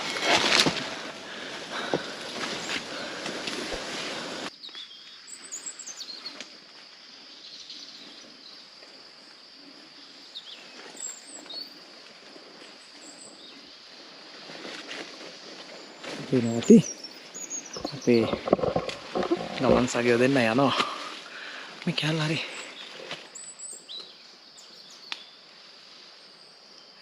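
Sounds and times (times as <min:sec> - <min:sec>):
bird chirps: 0:16.4 - 0:20.0.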